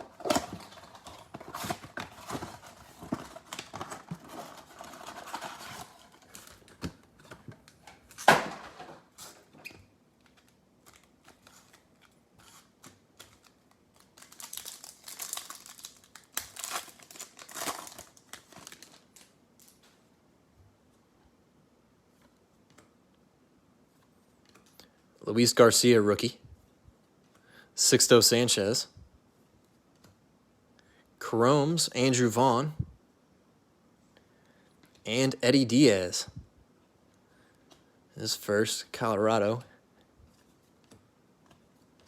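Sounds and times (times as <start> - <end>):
packaging crinkling: 0.0 - 7.0, 10.3 - 19.9
packaging ripping: 12.4 - 19.8.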